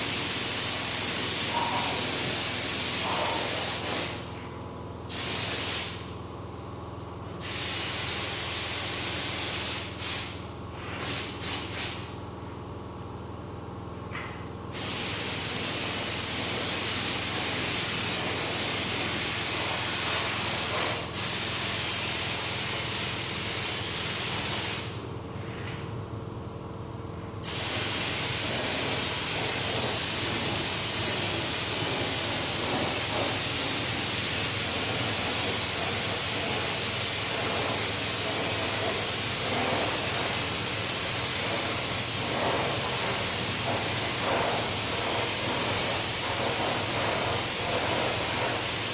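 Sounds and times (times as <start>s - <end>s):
pressurised spray jet hissing: 27.4s - 48.9s.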